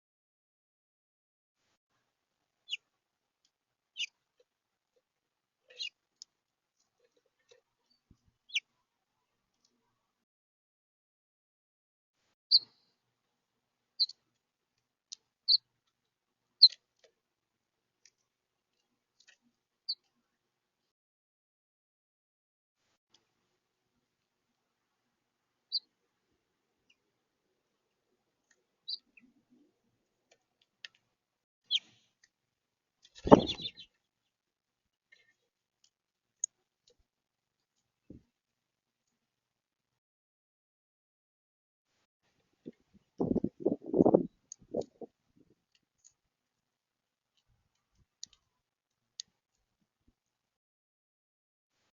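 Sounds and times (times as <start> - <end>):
birds chirping: 28.8 - 29.4, 33.1 - 34.0.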